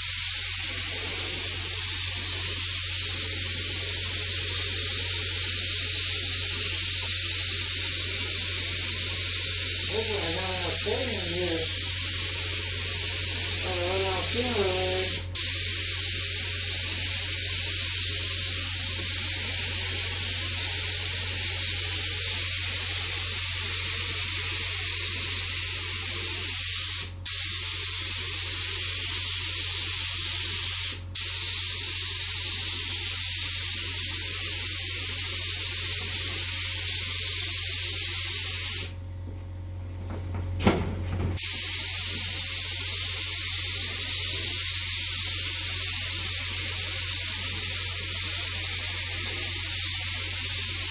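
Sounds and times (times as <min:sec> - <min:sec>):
paint spray gun hissing: 0:00.0 - 0:39.0, 0:41.4 - 0:50.9.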